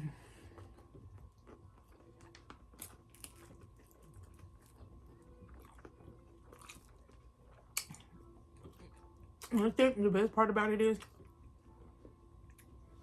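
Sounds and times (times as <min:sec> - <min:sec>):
person chewing crispy chicken: 0:00.4 - 0:09.6.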